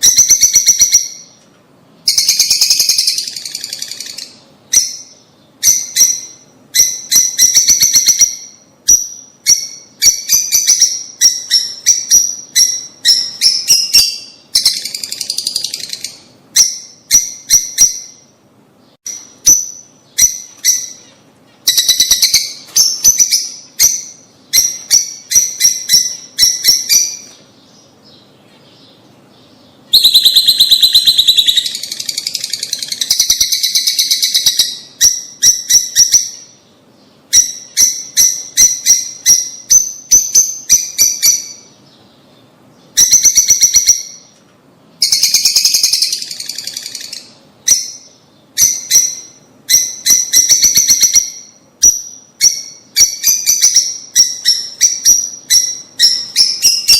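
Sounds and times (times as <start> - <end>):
lovebirds chattering: 0.0 - 44.4, 45.0 - 56.9.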